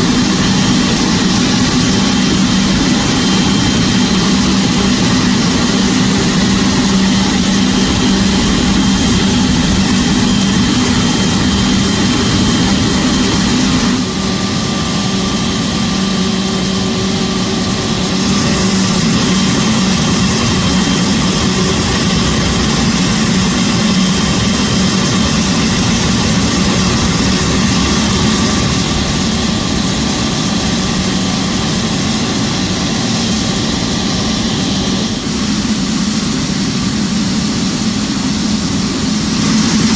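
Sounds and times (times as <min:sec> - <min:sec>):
jet engine roaring: 0:00.0 - 0:39.9.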